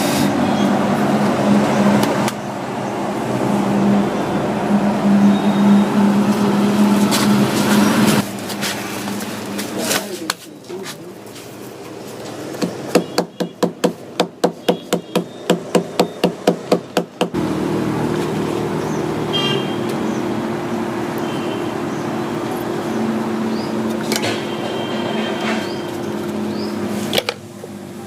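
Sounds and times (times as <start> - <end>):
machine hum: 0.8 - 9.6.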